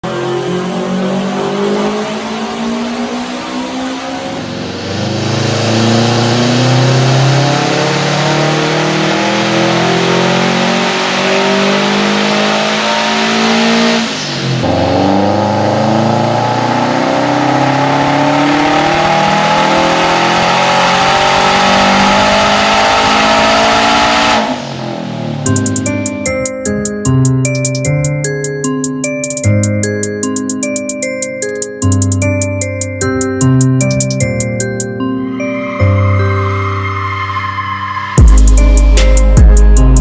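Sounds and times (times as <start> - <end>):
car engine accelerating hard: 0.0 - 26.2.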